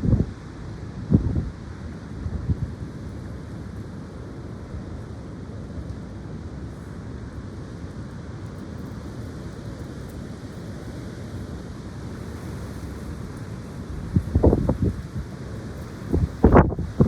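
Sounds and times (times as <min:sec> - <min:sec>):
gusty wind buffeting microphone: 0:00.0 - 0:03.5, 0:12.4 - 0:17.0.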